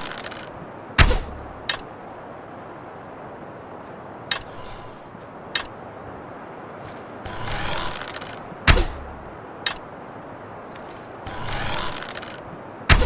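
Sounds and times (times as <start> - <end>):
bow clicks: 0.0 - 1.9, 4.3 - 5.8, 6.9 - 9.9, 10.7 - 13.0
loud sharp arrow hit: 8.7 - 9.0
arrow swish: 8.7 - 9.1.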